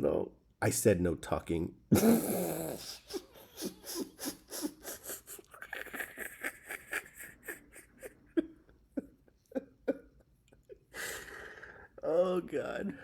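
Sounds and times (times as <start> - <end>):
person panting and grunting: 2.0 - 6.1.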